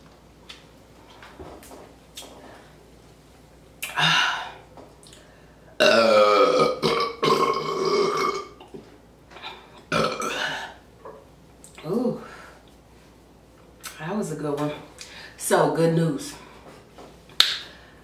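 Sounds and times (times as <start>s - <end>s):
person burping: 5.8s - 8.7s, 9.4s - 10.8s.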